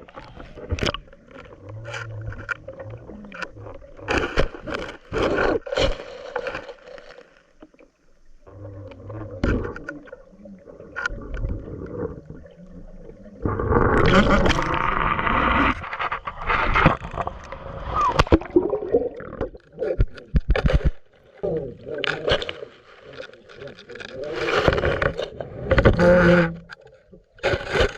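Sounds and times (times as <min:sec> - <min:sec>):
muffled underwater noise: 0:08.1 - 0:27.9
water rushing: 0:08.5 - 0:26.8
knocks and scrapes on camera: 0:15.4 - 0:17.3, 0:19.9 - 0:21.0.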